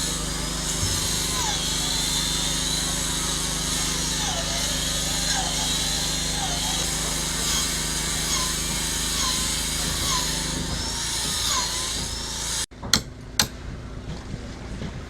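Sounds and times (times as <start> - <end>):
power tool running: 0.0 - 13.6
sharp knocks: 12.8 - 13.6.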